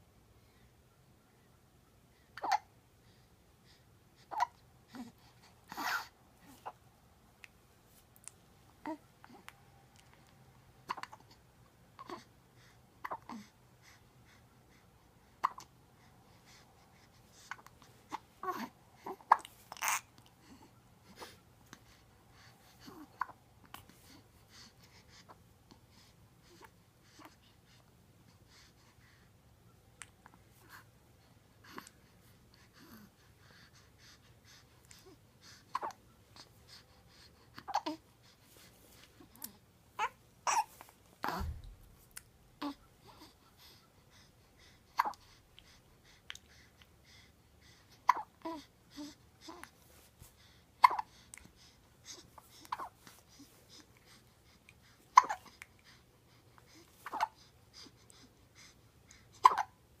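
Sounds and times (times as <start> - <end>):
hiccups: 2.4 - 2.7, 15.4 - 15.7, 50.8 - 51.1, 59.4 - 59.8.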